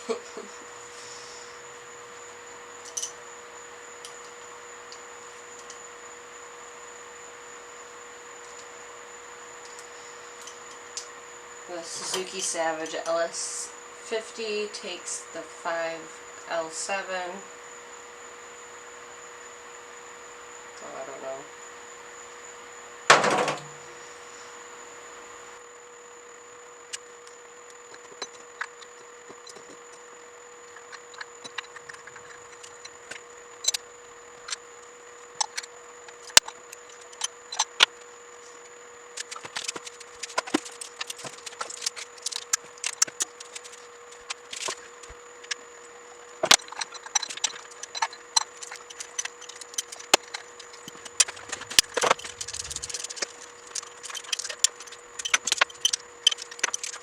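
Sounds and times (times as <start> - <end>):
faint high hum: 0.0 - 57.0
tools and parts clinking: 2.8 - 3.2, 46.4 - 57.0.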